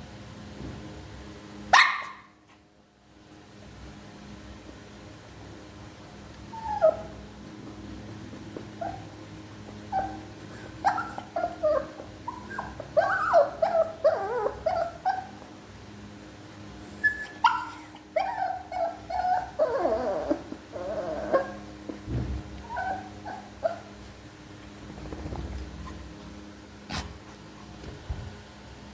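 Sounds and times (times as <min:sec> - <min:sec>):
small dogs whining and yipping: 0:06.0 - 0:15.6, 0:16.8 - 0:24.2.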